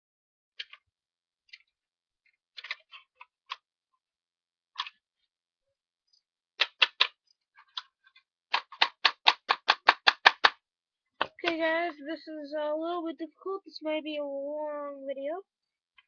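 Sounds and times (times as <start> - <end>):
hard plastic parts clicking: 0.6 - 0.9, 1.5 - 3.7, 4.8 - 5.0, 6.6 - 10.6.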